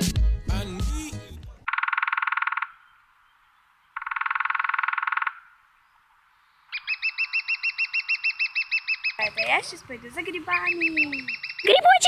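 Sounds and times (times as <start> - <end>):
buzzy trilled animal calls: 1.7 - 3.0, 4.0 - 5.6, 6.7 - 9.7, 10.4 - 12.0
rising chirps: 6.7 - 9.5, 10.6 - 12.0.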